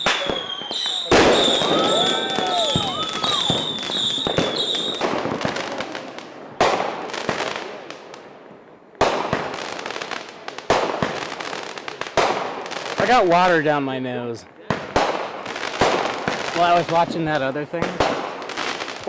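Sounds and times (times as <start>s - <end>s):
fireworks whistle: 0.0s - 5.7s
fireworks crackling pops: 0.0s - 13.7s, 14.4s - 19.0s
fireworks bangs: 0.0s - 19.0s.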